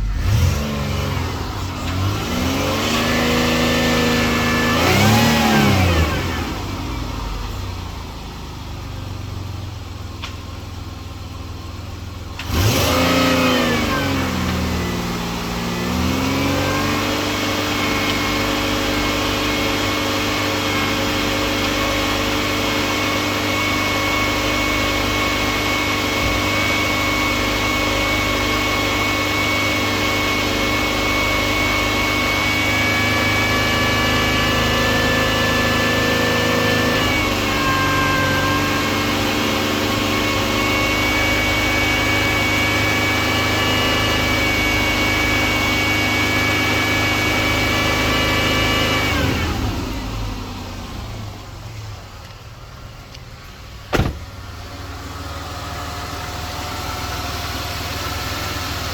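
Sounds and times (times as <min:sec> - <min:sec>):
car engine idling: 0:00.0 - 0:12.8, 0:50.0 - 0:58.9.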